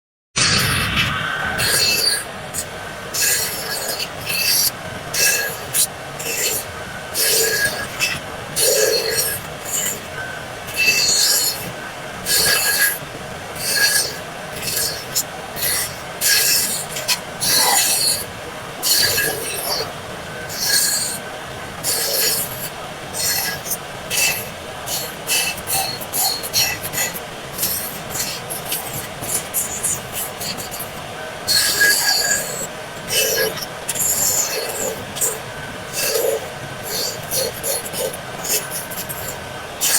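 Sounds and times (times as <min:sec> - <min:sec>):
hand tool rasping across wood: 0:01.6 - 0:13.0, 0:13.6 - 0:21.2, 0:21.8 - 0:39.9.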